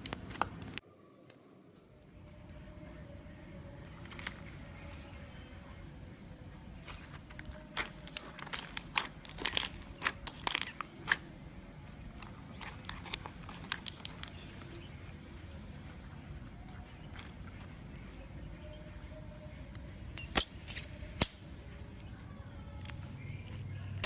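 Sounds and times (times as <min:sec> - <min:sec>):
slime crackling and popping: 0:06.8 - 0:11.3, 0:12.1 - 0:14.4.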